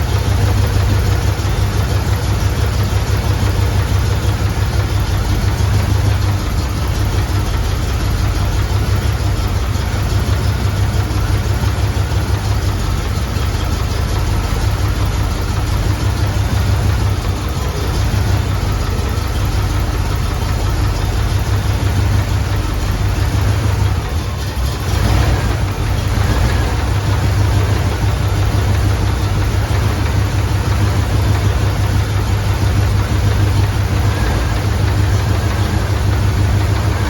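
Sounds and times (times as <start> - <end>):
car engine idling: 0.0 - 37.0.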